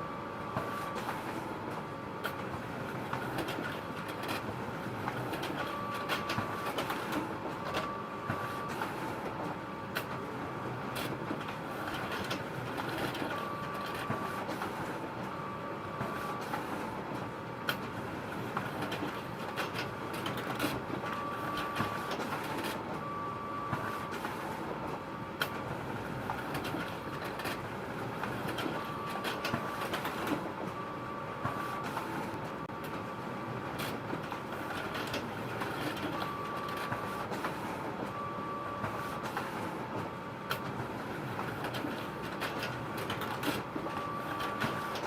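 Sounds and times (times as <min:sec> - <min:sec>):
photocopier running: 0:00.0 - 0:45.0.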